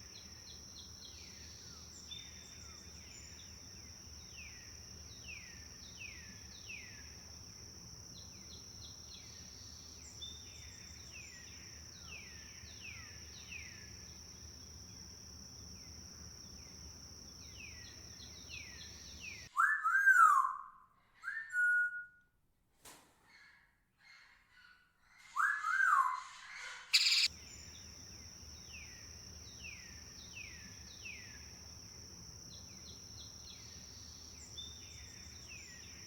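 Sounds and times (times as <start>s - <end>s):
loud whistled bird calls: 19.5s - 22.1s, 25.4s - 27.3s
birds whistling descending notes: 27.0s - 27.3s.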